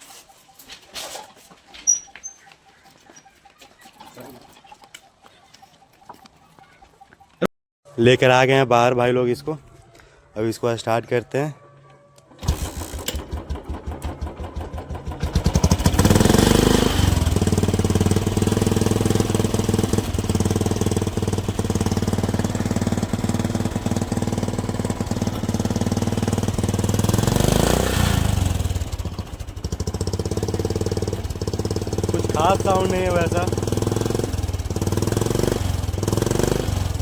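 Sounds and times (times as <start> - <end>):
diesel engine cranking: 12.3 - 37.0
tractor engine revving and running: 12.4 - 37.0.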